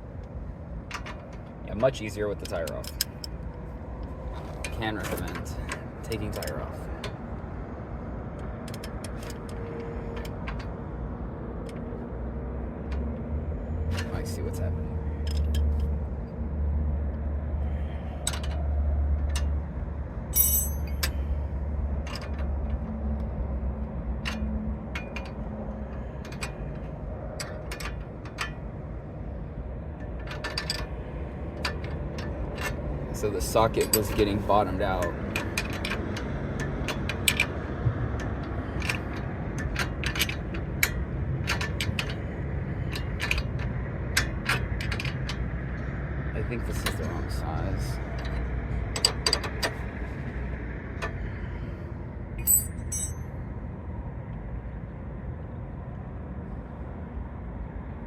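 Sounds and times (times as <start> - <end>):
hand tools clinking on metal: 20.4 - 21.1, 52.4 - 53.2.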